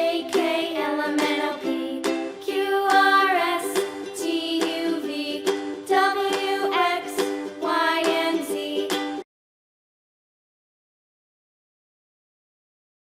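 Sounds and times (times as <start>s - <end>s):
light upbeat music: 0.0s - 9.2s.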